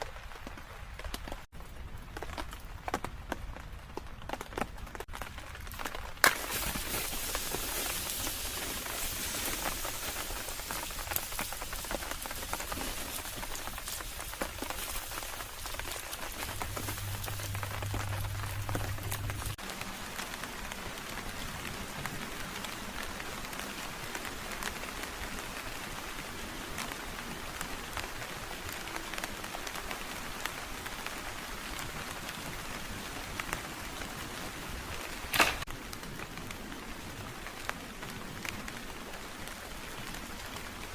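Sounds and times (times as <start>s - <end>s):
steady rain falling: 0.0s - 40.9s
low hum: 16.1s - 19.6s.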